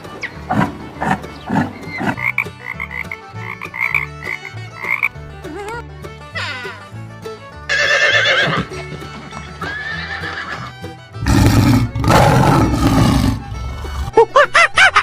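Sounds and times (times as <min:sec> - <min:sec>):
background music with bass line: 0:00.0 - 0:15.0
horse neighing: 0:07.7 - 0:08.7, 0:09.6 - 0:14.2.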